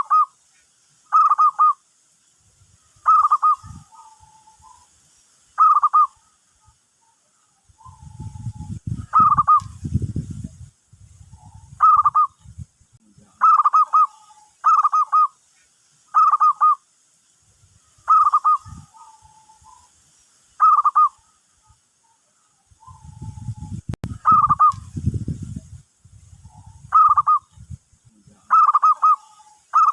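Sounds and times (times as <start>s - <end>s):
dove cooing: 1.1s - 1.8s, 3.0s - 4.8s, 5.6s - 6.3s, 7.8s - 9.7s, 11.3s - 12.4s, 13.4s - 15.3s, 18.1s - 19.8s, 20.6s - 21.4s, 22.8s - 24.8s, 26.4s - 27.5s, 28.5s - 29.9s.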